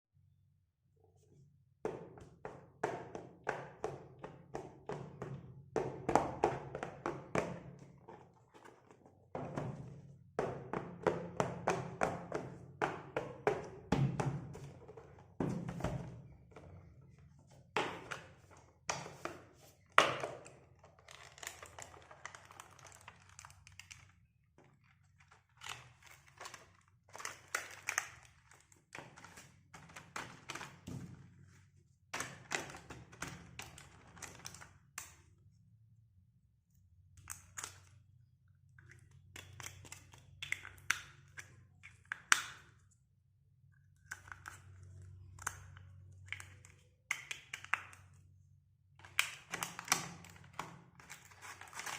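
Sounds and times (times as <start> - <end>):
packaging rustling: 51.0 - 51.9.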